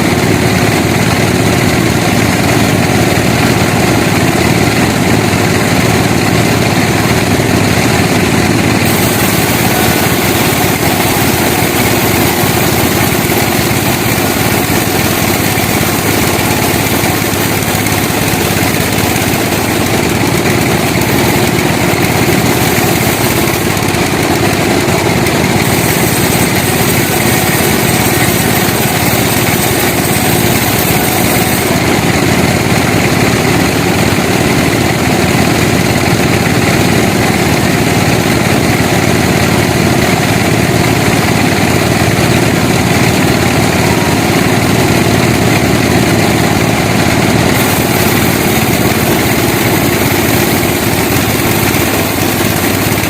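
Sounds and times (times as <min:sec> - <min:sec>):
sawmill machinery droning: 0:00.0 - 0:53.0.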